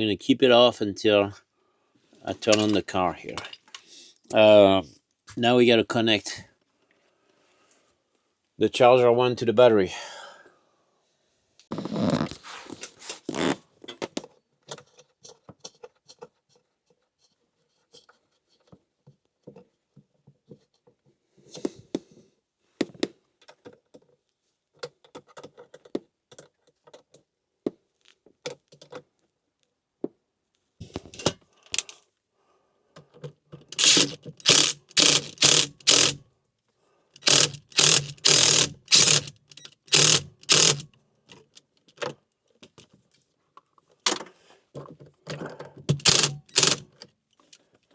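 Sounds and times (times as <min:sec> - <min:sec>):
loud even mechanical strokes: 0:33.8 - 0:36.2, 0:37.2 - 0:40.8, 0:46.0 - 0:46.8
metal parts clicking and scraping: 0:33.8 - 0:36.2, 0:37.2 - 0:41.4, 0:45.9 - 0:46.8.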